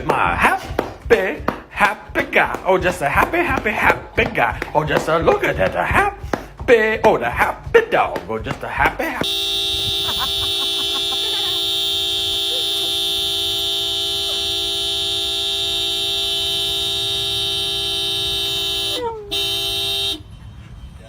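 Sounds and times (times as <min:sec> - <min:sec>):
loud steady horn tone: 0:09.2 - 0:21.0.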